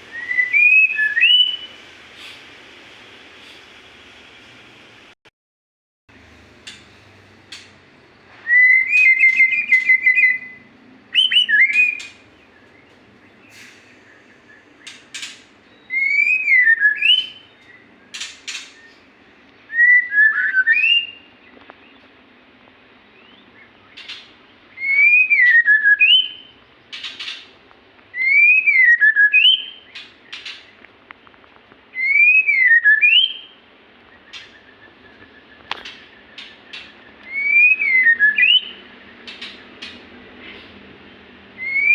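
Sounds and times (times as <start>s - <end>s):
bird singing whistled phrases: 0.0s - 1.8s, 8.4s - 15.0s, 15.7s - 19.0s, 19.7s - 21.3s, 23.0s - 24.0s, 24.8s - 26.6s, 28.1s - 30.0s, 32.0s - 39.3s, 41.6s - 41.9s.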